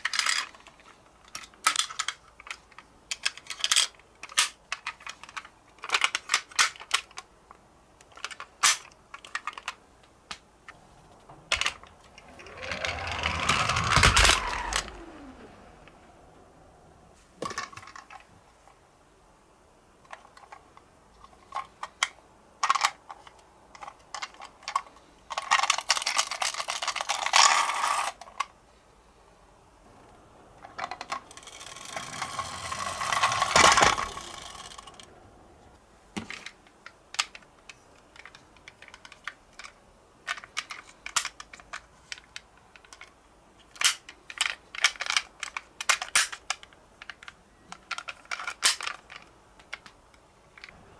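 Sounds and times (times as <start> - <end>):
toy car wheels rattling: 0.0 - 7.2, 11.5 - 18.2, 21.2 - 28.5, 30.2 - 35.1, 43.7 - 49.9
small plastic clicks: 11.5 - 16.4, 30.6 - 35.1, 36.2 - 50.8.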